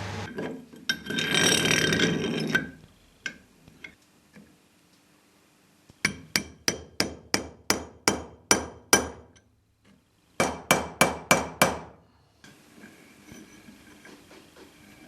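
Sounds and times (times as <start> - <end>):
hammer striking steel: 6.0 - 9.3.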